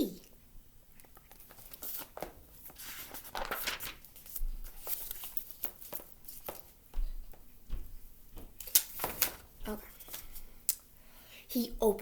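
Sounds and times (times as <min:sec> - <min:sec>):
paper pages rustling: 0:01.0 - 0:06.8, 0:08.3 - 0:10.6.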